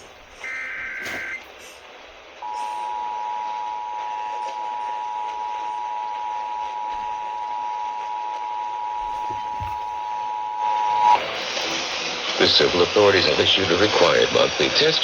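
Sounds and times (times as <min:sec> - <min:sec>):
receiver hiss: 0:00.0 - 0:15.0
two-tone alert signal: 0:00.4 - 0:01.4.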